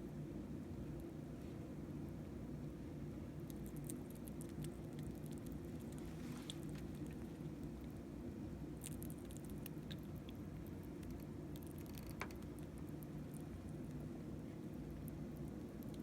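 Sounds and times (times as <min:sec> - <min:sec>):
steady low hum: 0:00.0 - 0:16.0
small animal chewing: 0:03.3 - 0:16.0.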